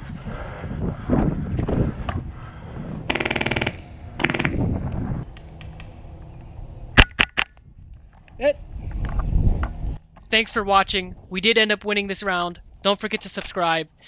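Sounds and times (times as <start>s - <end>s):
airsoft gun rapid burst: 3.1s - 4.6s.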